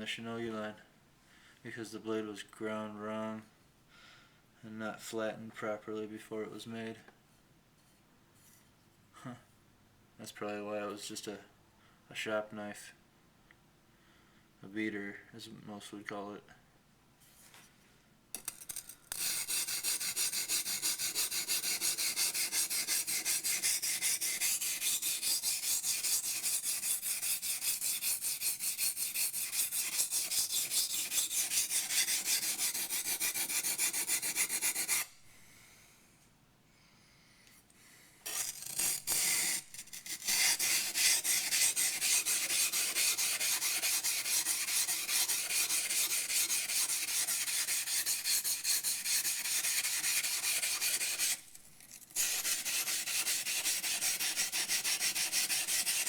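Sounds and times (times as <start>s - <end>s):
knife scraping on wet whetstone: 18.4s - 35.1s, 38.2s - 56.0s.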